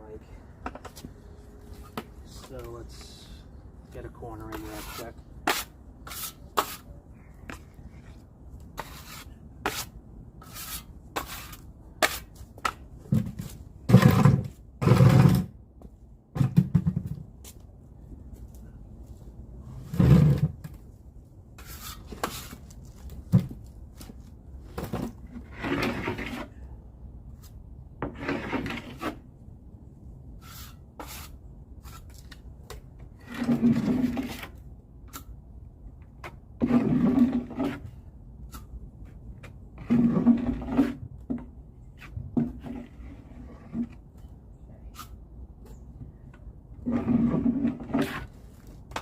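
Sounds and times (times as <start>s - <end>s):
taping knife scraping compound: 4.5s - 12.8s, 21.6s - 23.1s, 30.4s - 32.4s, 36.6s - 37.9s, 46.8s - 49.0s.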